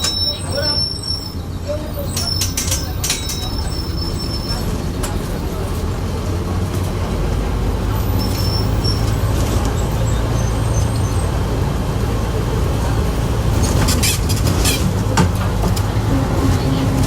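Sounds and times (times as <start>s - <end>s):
faint high squeaks: 0.0s - 4.8s
bus engine droning: 0.0s - 17.0s.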